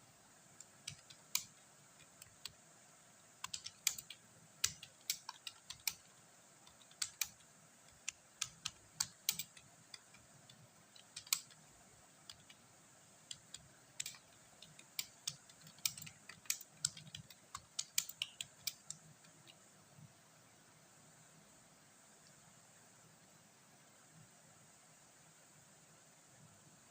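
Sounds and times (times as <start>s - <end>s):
typing on computer keyboard: 0.6s - 2.6s, 3.4s - 12.6s, 13.2s - 19.6s.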